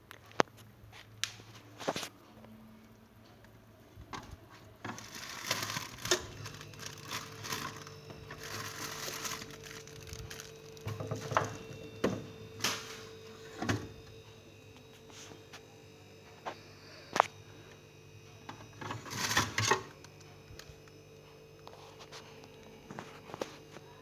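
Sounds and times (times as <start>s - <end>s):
plastic trays clicking and knocking: 4.1s - 12.8s
plastic packaging crinkling: 4.8s - 13.2s.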